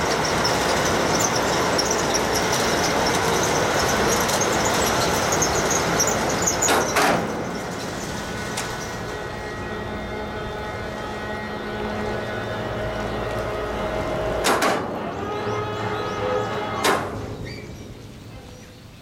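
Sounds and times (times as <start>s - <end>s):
short high squeaks: 0.0s - 9.4s, 15.0s - 17.9s.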